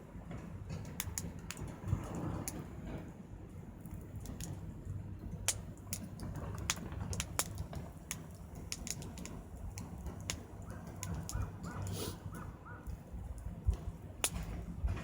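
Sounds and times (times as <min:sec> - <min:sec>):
wood fire crackling: 0:00.6 - 0:02.9, 0:03.6 - 0:15.0
sharp pops and snaps: 0:00.7 - 0:02.6, 0:04.0 - 0:04.6, 0:05.4 - 0:14.6.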